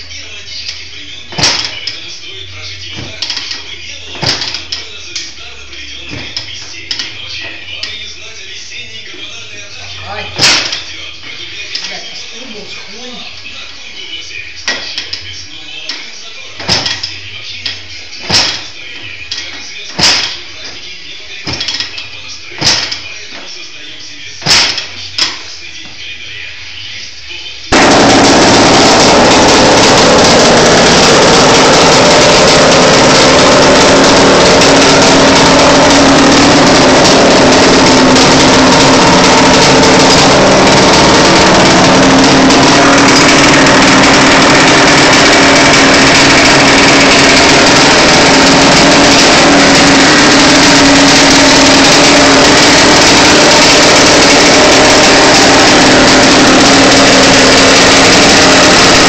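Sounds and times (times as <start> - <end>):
two-stroke motorcycle engine running: 27.7 - 59.0.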